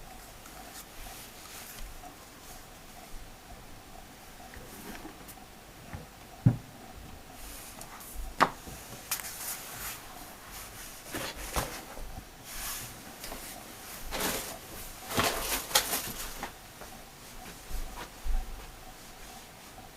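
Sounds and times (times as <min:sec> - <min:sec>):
packaging rustling: 0:14.1 - 0:16.6.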